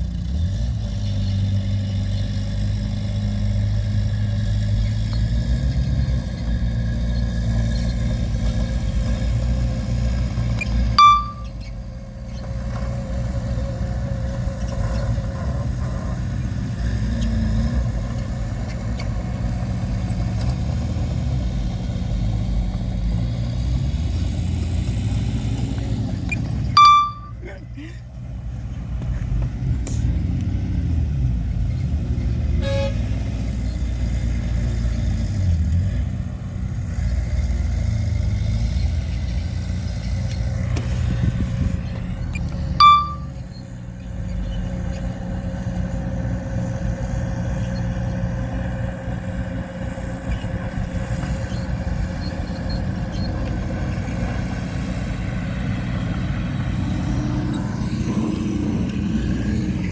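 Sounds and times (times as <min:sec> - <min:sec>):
heavy diesel machinery rumbling: 0:00.0 - 0:59.9
short horn toot: 0:11.0 - 0:11.7, 0:26.8 - 0:27.4, 0:32.6 - 0:33.2, 0:42.8 - 0:43.4.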